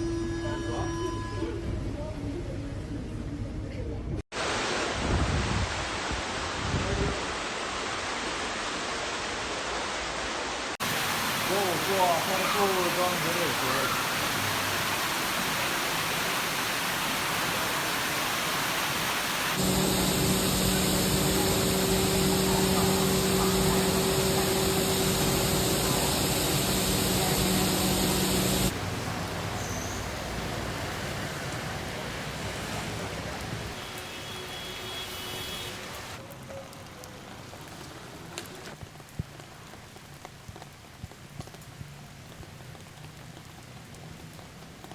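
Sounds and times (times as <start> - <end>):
heavy rain and rushing water: 4.3 - 44.9
steady low hum: 19.6 - 28.7.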